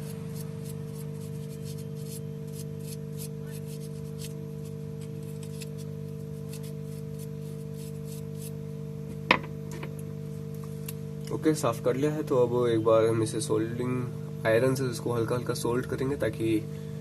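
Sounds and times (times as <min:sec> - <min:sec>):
steady electrical hum: 0:00.0 - 0:17.0
scratchy scrubbing of circuit board: 0:00.4 - 0:08.6.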